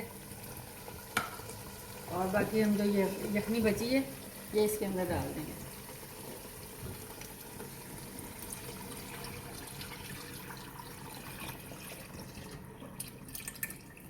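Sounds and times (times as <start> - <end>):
liquid pouring into pot: 5.6 - 14.0
liquid dripping: 8.4 - 14.0.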